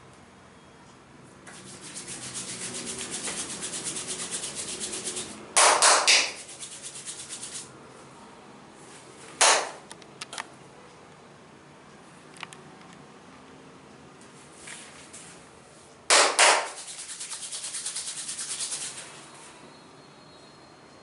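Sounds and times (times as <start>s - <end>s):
hands rubbing oiled skin: 1.5s - 5.4s, 6.2s - 7.7s, 16.5s - 19.2s.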